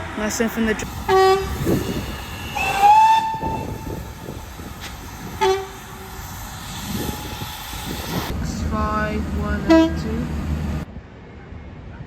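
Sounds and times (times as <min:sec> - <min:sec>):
low rumble of train: 0:00.0 - 0:12.0
train horn: 0:01.1 - 0:04.1, 0:05.4 - 0:06.1, 0:09.5 - 0:10.2.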